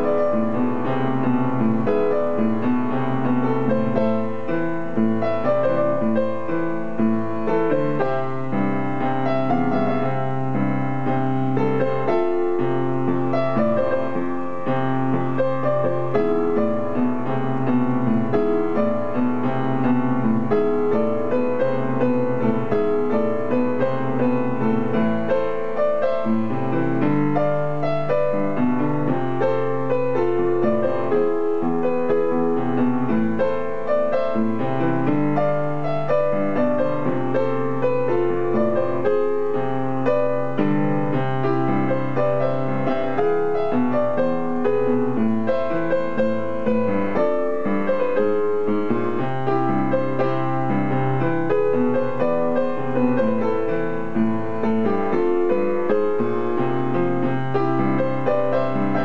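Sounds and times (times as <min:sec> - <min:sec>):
solo piano pop-rock song: 0:00.0 - 0:59.0.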